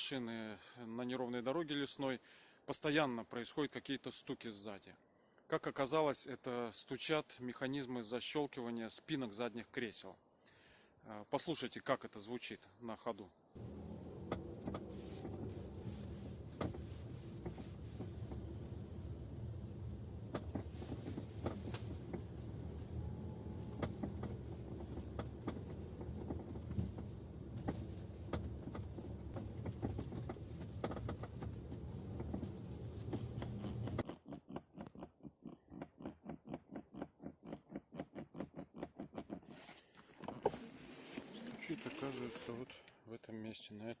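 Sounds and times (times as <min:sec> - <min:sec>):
rough road rumble: 0:13.6 - 0:34.2, 0:35.8 - 0:42.8
seat latches knocking: 0:20.2 - 0:34.0.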